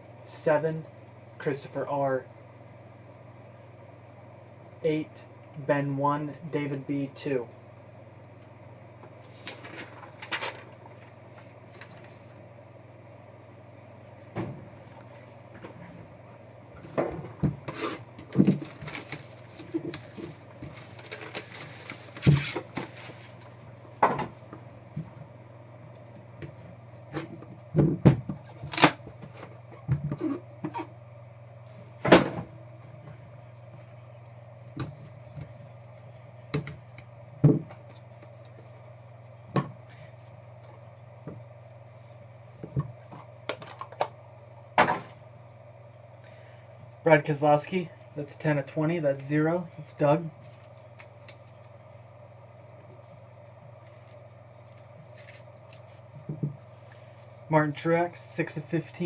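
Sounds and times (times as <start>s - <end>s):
crinkly packaging rustling: 18.3s - 23.8s.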